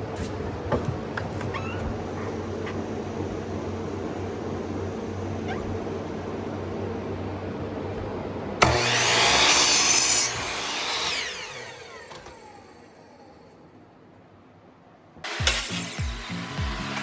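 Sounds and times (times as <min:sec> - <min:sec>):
power saw cutting wood: 0:08.0 - 0:13.5, 0:15.2 - 0:17.0
saw blade spinning down: 0:08.0 - 0:13.6, 0:15.3 - 0:17.0.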